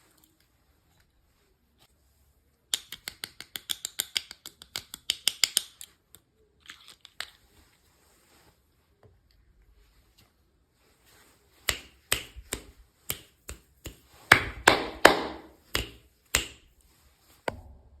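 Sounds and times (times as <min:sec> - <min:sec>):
small toy pieces clicking: 0:02.7 - 0:05.9.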